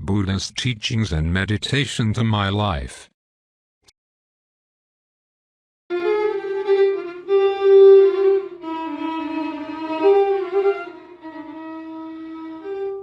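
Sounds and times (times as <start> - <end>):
solo violin melody: 5.9 - 13.0.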